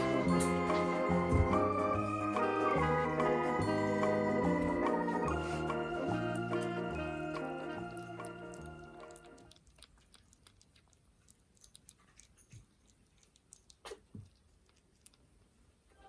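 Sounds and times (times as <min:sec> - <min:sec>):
background music: 0:00.0 - 0:09.4.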